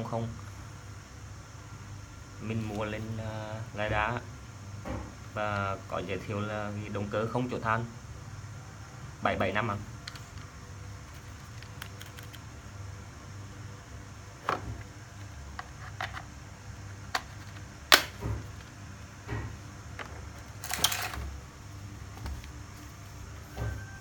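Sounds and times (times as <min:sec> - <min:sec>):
drill kit handling clicks: 0:16.9 - 0:18.7, 0:20.0 - 0:21.3.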